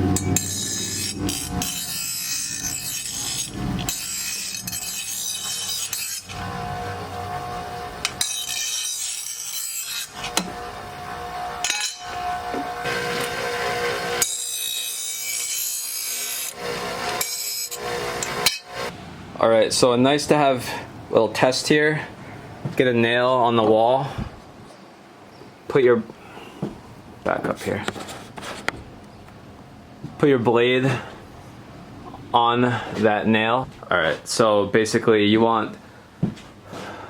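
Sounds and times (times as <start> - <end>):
metal file rasping on blade: 0.1 - 10.5, 11.6 - 18.9.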